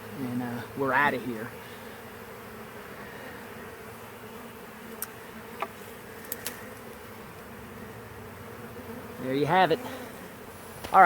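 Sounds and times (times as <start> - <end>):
honeybees buzzing: 0.0 - 11.0
faint clicks: 4.9 - 6.6.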